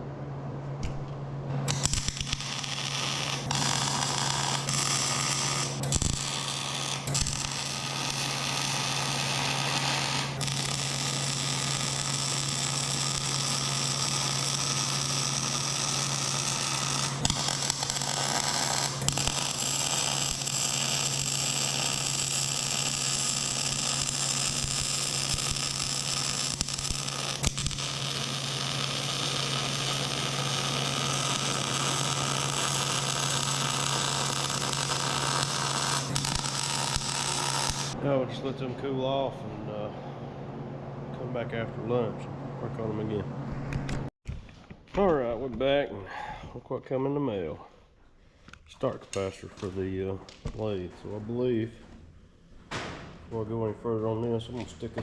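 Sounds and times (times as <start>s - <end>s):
welder low hum: 0.0s - 44.1s
arc welding crackling hiss: 1.7s - 38.0s.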